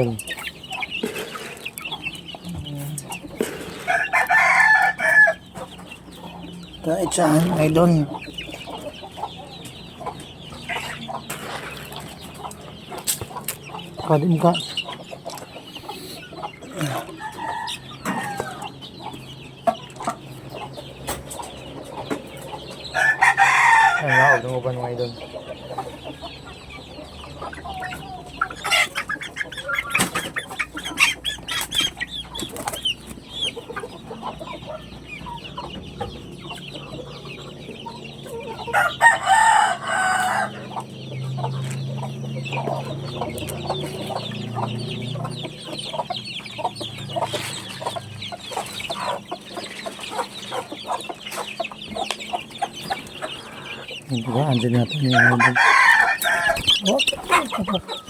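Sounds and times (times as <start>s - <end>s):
chickens clucking: 0.0s - 58.0s
rooster crowing: 3.8s - 5.4s, 16.8s - 18.7s, 22.9s - 24.5s, 38.7s - 40.7s, 55.0s - 57.8s.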